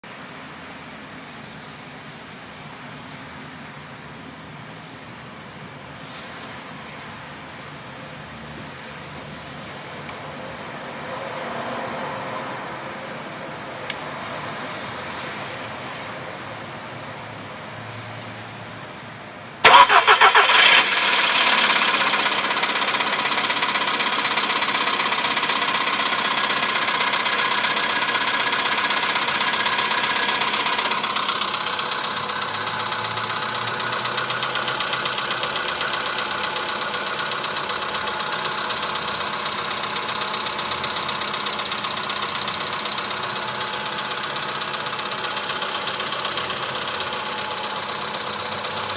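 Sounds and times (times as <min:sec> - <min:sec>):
engine starting and idling: 0:19.6 - 0:48.9.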